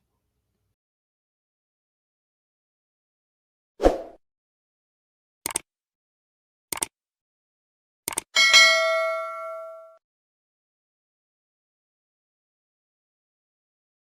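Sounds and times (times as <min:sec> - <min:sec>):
short double clicks: 0:05.4 - 0:05.7, 0:06.7 - 0:06.9, 0:08.1 - 0:08.3
bell ringing: 0:08.4 - 0:10.0.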